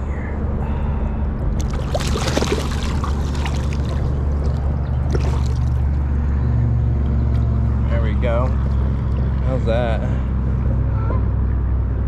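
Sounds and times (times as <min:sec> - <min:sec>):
low rumble: 0:00.0 - 0:12.0
water splashing and trickling: 0:01.5 - 0:06.2, 0:07.2 - 0:10.8.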